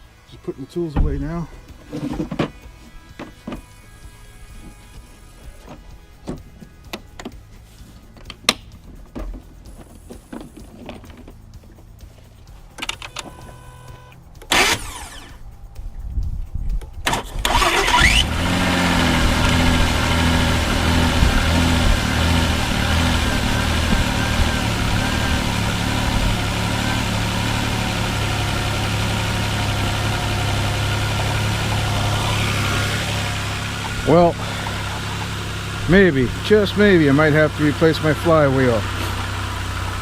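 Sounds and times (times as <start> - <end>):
car engine idling: 4.4 - 40.0
starter cranking with whine: 12.7 - 15.9, 16.7 - 40.0.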